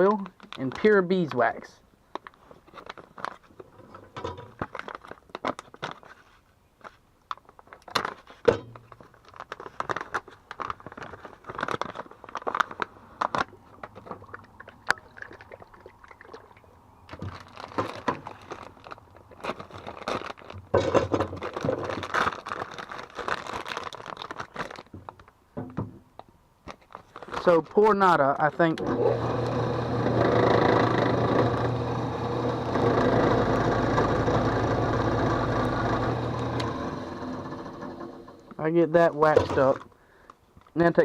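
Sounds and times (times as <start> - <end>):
plastic packaging crinkling: 0.0 - 3.7, 4.4 - 25.4, 26.6 - 28.7.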